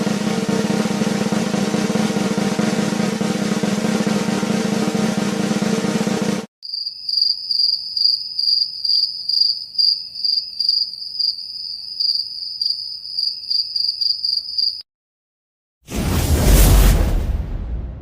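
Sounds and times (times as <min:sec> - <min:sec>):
cricket chirping: 0:06.6 - 0:14.8.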